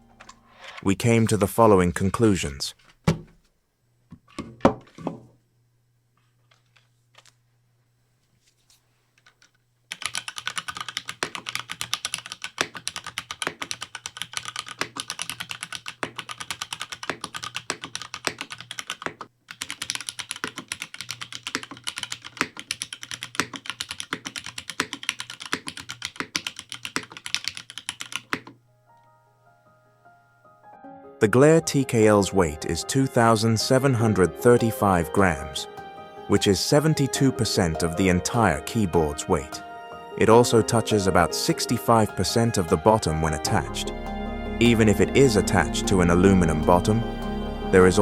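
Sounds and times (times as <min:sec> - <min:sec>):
mechanical keyboard typing: 0:09.4 - 0:28.6.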